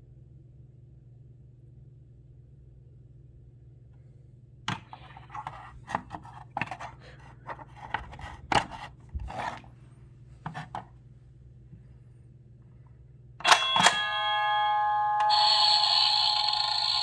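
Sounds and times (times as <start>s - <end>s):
handling clicks and scrapes: 4.7s - 9.8s.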